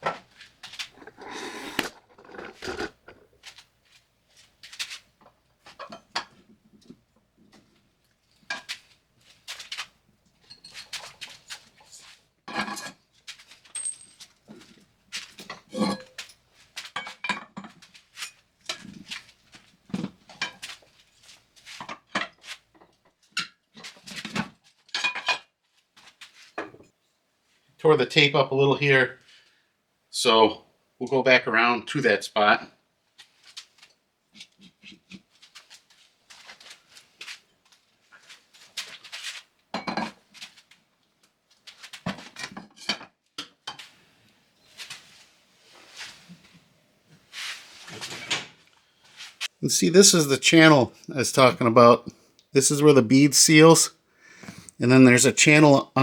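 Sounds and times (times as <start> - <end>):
steel bar clinking and scraping: 0.8 - 3.3.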